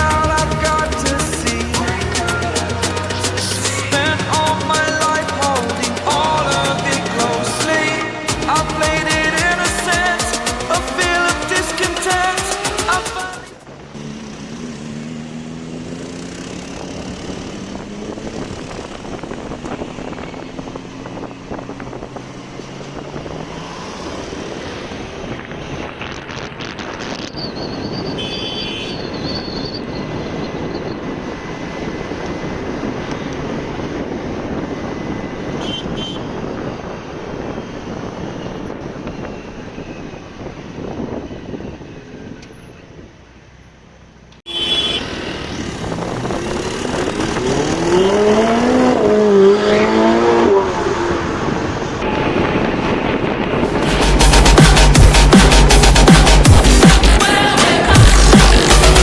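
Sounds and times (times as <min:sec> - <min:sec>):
vehicle engine slowing: 0:00.0 - 0:26.2, 0:45.0 - 0:59.0
road and traffic rush: 0:00.0 - 0:59.0.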